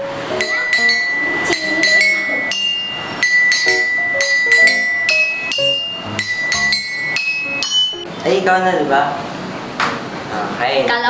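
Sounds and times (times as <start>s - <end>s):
bell-like musical notes: 0.0s - 8.1s.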